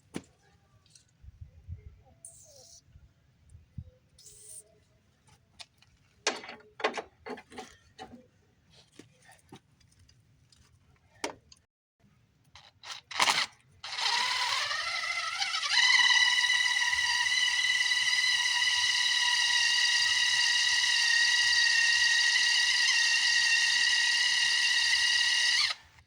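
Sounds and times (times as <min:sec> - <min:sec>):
scattered clicks and knocks: 0:05.6 - 0:08.2
electric drill whining: 0:13.8 - 0:26.0.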